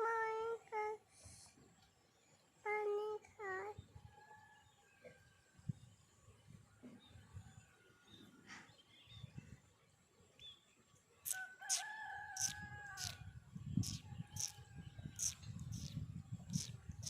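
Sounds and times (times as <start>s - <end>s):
bird's long drawn-out call: 11.3s - 13.2s, 13.8s - 14.6s, 15.2s - 16.0s, 16.6s - 16.8s
short high chirps: 13.8s - 14.6s, 15.2s - 16.0s.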